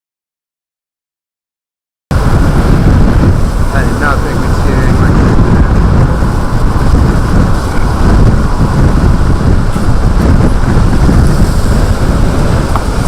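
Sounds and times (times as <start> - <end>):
strong wind buffeting microphone: 2.1 - 13.0.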